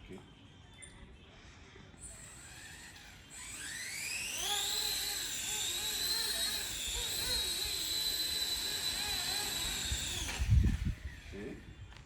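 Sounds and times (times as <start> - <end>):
model helicopter motor whining: 2.0 - 11.6.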